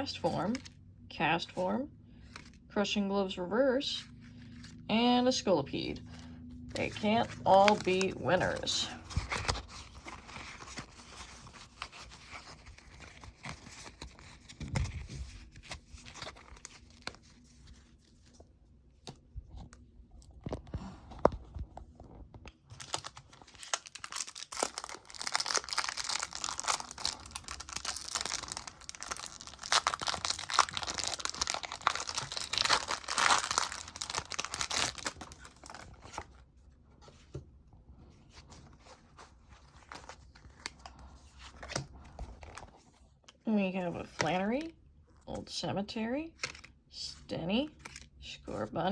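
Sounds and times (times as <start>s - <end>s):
foil wrapper crinkling and tearing: 22.6s - 36.3s.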